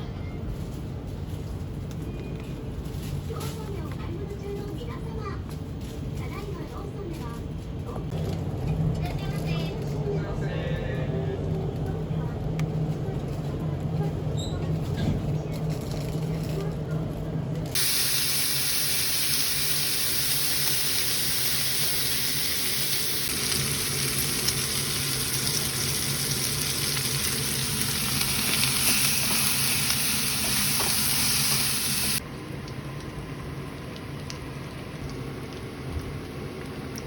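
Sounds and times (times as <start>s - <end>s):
food sizzling in frying pan: 17.8s - 32.2s.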